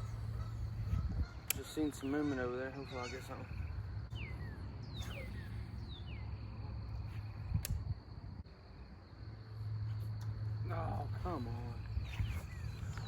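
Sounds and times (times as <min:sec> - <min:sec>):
high insect drone: 0:00.0 - 0:13.0
sharp click: 0:07.6 - 0:07.9.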